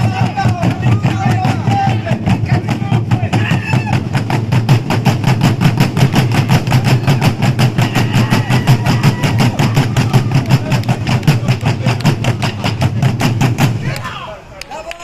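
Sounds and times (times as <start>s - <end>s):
deep booming drums: 0.0s - 14.0s.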